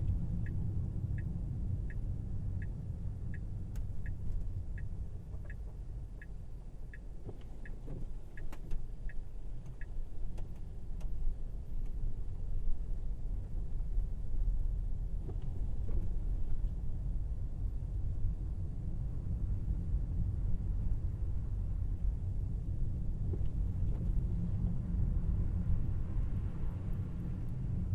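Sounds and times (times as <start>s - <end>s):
turn signal ticking: 0.0s - 13.7s
road and tyre rumble: 0.0s - 27.9s.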